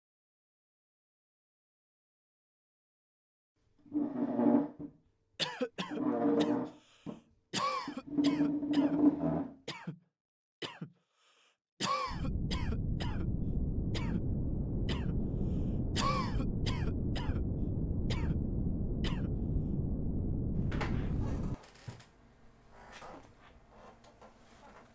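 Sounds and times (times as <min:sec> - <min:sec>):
person coughing: 0:05.4 - 0:06.7, 0:07.6 - 0:09.0, 0:09.7 - 0:10.0, 0:10.6 - 0:11.0, 0:11.8 - 0:13.3, 0:14.0 - 0:14.2, 0:14.9 - 0:15.2, 0:16.0 - 0:17.4, 0:18.1 - 0:18.4, 0:19.1 - 0:19.3
throat clearing: 0:05.4 - 0:06.7, 0:07.6 - 0:09.0, 0:09.7 - 0:11.0, 0:11.8 - 0:13.2, 0:16.0 - 0:17.4
steady low rumble: 0:11.8 - 0:21.6.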